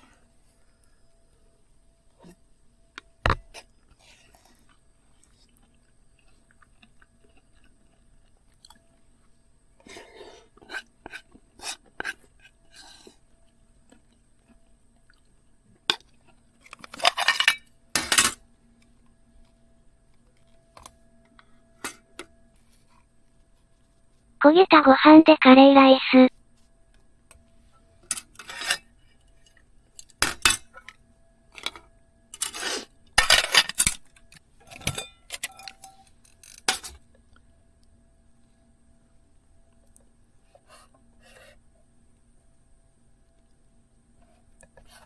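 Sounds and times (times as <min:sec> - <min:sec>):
chewing: 0:03.9 - 0:16.8
metal spoon scraping a pot: 0:28.3 - 0:28.8.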